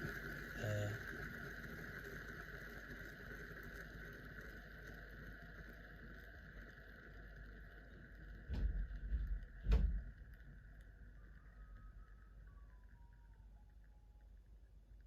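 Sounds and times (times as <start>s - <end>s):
spinning object whirring: 0.0s - 15.0s.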